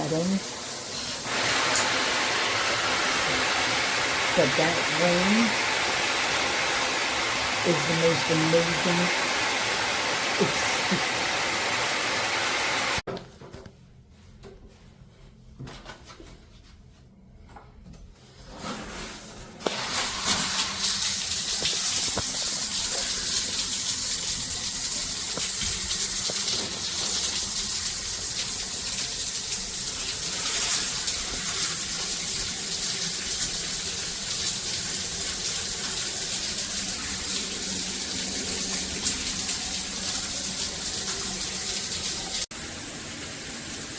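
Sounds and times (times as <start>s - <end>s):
shower head spraying water: 0.0s - 13.0s, 19.6s - 43.9s.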